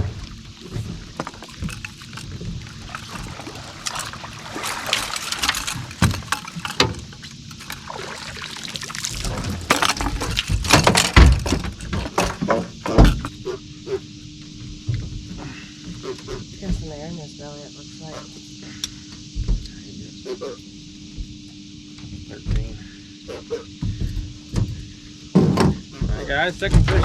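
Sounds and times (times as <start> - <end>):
water splashing: 0.0 - 12.0
knocks on boat: 23.8 - 27.0.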